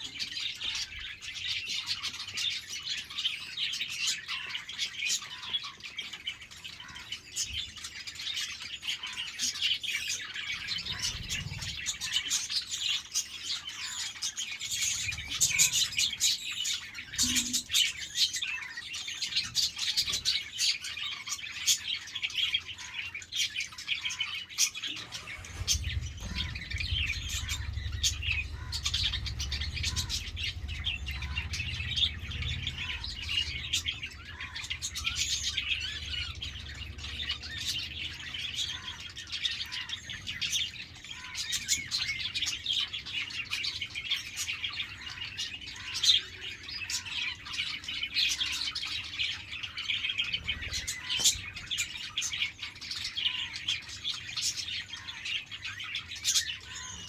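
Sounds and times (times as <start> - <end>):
budgerigars chattering: 0.0 - 57.0
low rumble: 24.9 - 40.0.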